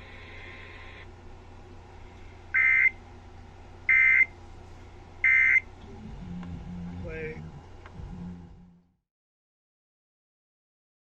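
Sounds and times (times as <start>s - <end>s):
steady low hum: 0.0s - 9.0s
two-tone electronic squawks: 2.6s - 3.0s, 3.9s - 4.3s, 5.2s - 5.7s.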